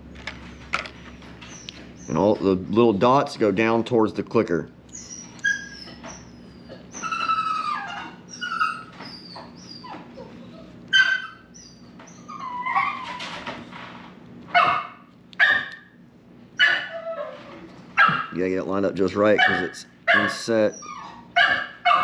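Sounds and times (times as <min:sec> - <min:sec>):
dog whining and whimpering: 0:00.5 - 0:02.4, 0:04.9 - 0:13.6, 0:16.6 - 0:18.3, 0:19.4 - 0:22.0.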